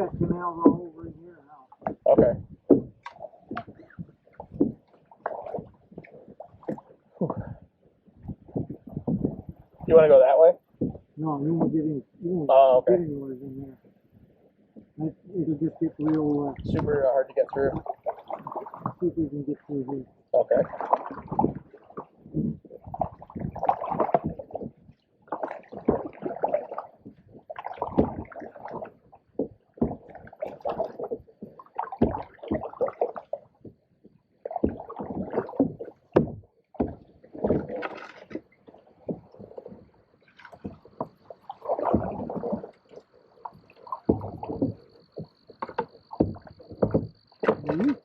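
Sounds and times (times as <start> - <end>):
paddle splashing in water: 0.0 - 11.8, 14.6 - 48.0
paddles scraping canoe hull: 0.0 - 11.8, 15.6 - 19.3, 20.4 - 48.0
faint high insect trill: 38.4 - 48.0.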